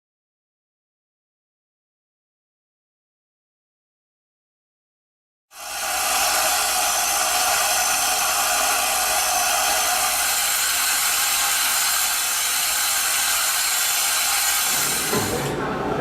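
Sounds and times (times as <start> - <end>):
lathe machining whir: 5.6 - 16.0.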